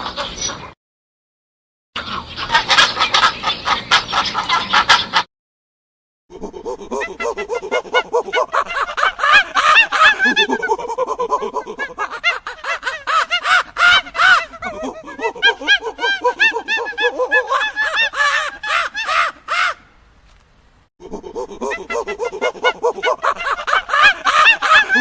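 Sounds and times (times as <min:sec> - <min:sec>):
flock of birds calling: 0:00.0 - 0:00.7, 0:02.0 - 0:05.2, 0:08.4 - 0:10.6, 0:12.0 - 0:19.8, 0:22.2 - 0:25.0.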